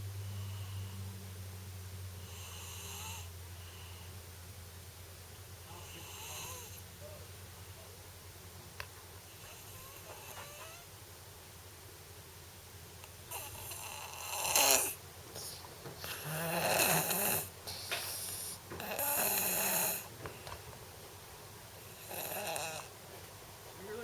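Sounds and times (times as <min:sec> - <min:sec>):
boy snoring: 0:02.2 - 0:03.3, 0:05.7 - 0:06.8, 0:09.4 - 0:10.8, 0:13.3 - 0:20.1, 0:21.9 - 0:22.9.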